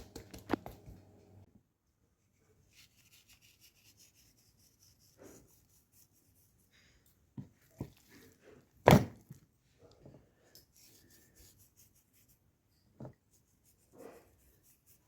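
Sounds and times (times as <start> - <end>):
faint rubbing and scraping: 9.7 - 15.0.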